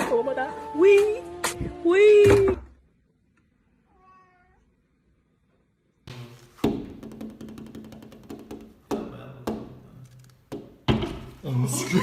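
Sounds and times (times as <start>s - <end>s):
cat meowing: 3.8s - 4.8s
sharp knock: 6.1s - 9.7s.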